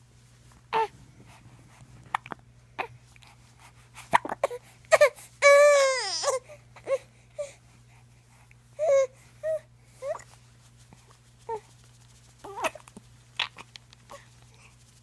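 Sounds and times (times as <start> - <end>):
baby crying: 5.0 - 6.4.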